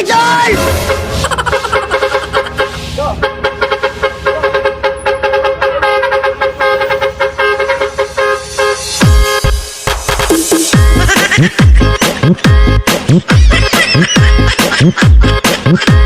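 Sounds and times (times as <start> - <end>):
dance music beat: 0.0 - 6.2, 7.8 - 16.0
truck horn honking a chord: 0.5 - 9.5.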